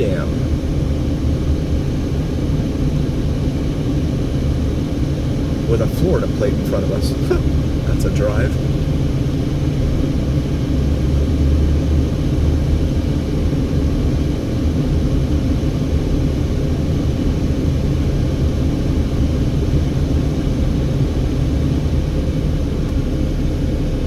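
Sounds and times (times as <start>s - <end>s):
car cabin road noise: 5.4s - 10.2s.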